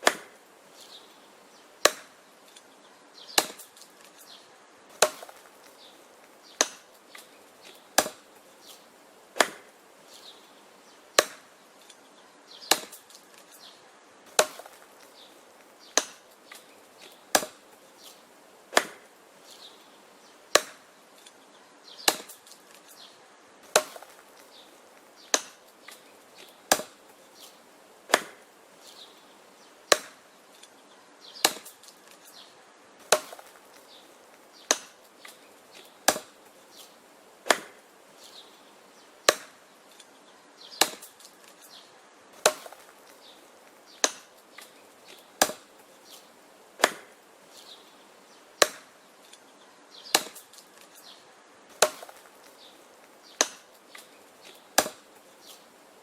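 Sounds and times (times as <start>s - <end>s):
axe chopping wood: 0.0s - 0.4s, 1.8s - 2.6s, 3.3s - 4.2s, 4.9s - 5.8s, 6.5s - 8.8s, 9.4s - 9.8s, 11.2s - 11.9s, 12.6s - 13.5s, 14.3s - 19.1s, 20.5s - 20.9s, 22.0s - 22.9s, 23.6s - 28.5s, 29.9s - 30.6s, 31.4s - 32.4s, 33.0s - 38.4s, 39.2s - 40.0s, 40.7s - 41.7s, 42.3s - 45.8s, 46.8s - 47.2s, 48.6s - 48.9s, 50.1s - 51.0s, 51.7s - 52.6s, 53.3s - 55.6s.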